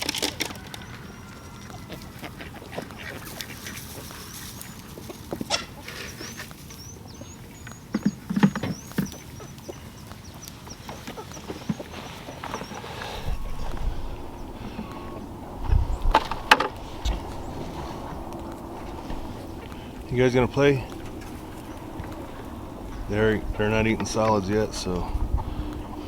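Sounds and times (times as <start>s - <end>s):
knocks and rustles: 7.9s - 9.3s.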